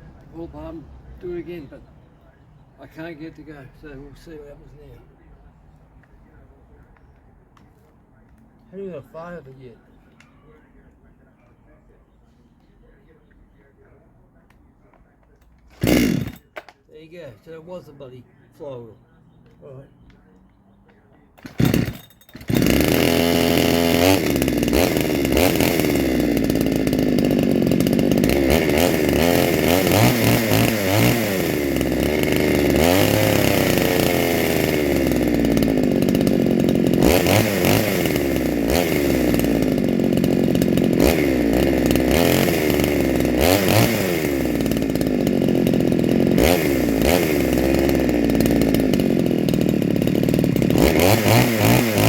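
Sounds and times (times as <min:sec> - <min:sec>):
chainsaw revving: 0:15.6 - 0:16.6, 0:21.4 - 0:52.0.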